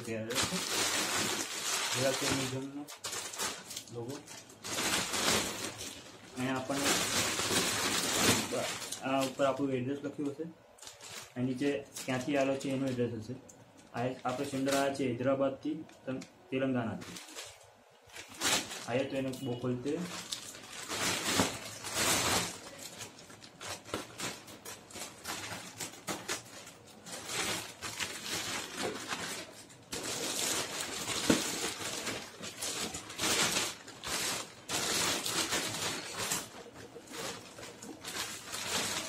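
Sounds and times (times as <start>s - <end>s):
packaging ripping: 0.0s - 9.6s, 18.2s - 39.0s
packaging rustling and crinkling: 0.0s - 15.0s, 16.9s - 39.0s.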